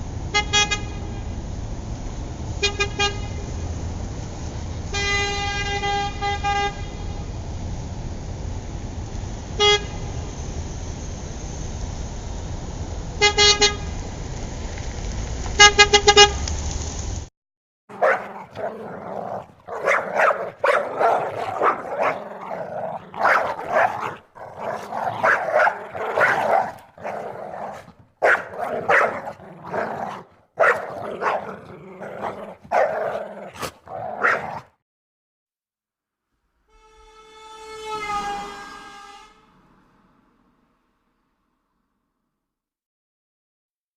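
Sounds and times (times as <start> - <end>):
traffic noise: 0.0 - 17.2, 17.9 - 34.6
dog barking: 17.9 - 34.7
car horn honking: 36.7 - 39.6.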